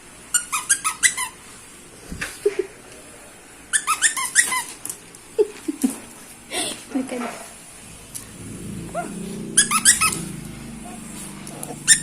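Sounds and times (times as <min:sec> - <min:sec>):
squeaky dog toy squeaks: 0:00.3 - 0:01.4, 0:03.7 - 0:04.7, 0:09.6 - 0:10.2.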